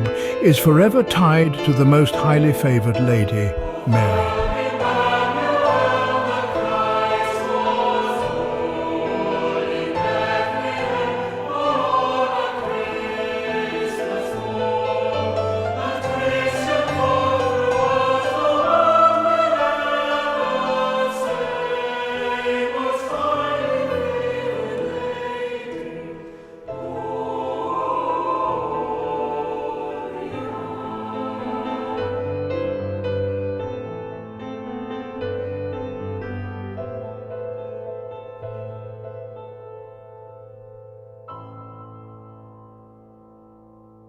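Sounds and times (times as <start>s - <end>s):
choir singing held notes: 0.0s - 33.3s.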